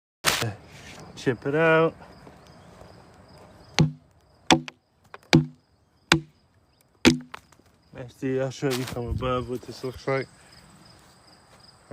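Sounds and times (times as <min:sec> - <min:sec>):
hatchet chopping wood: 0:03.8 - 0:06.3, 0:07.0 - 0:07.4.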